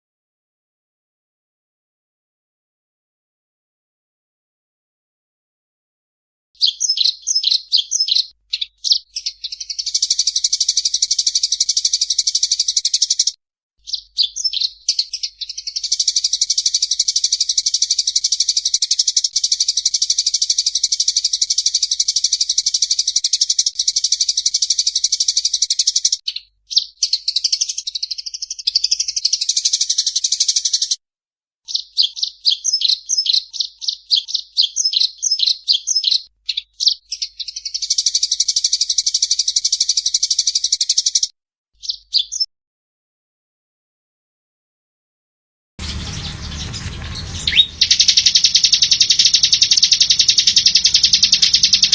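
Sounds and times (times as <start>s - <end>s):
buzzy bird trills: 6.6s - 31.0s, 45.8s - 51.9s
rapid chattering bird notes: 6.6s - 31.0s, 45.8s - 51.9s
recorded songbird song: 6.6s - 31.0s, 31.6s - 42.5s, 45.8s - 51.9s.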